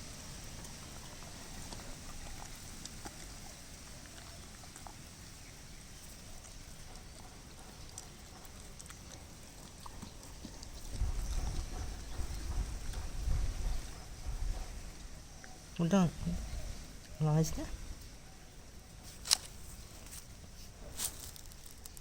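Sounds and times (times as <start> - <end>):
dog chewing: 0.1 - 14.0.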